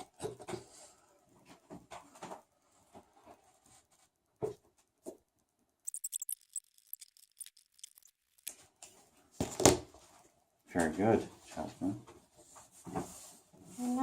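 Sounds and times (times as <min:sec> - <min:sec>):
light high clicks and crinkles: 0:05.8 - 0:09.0.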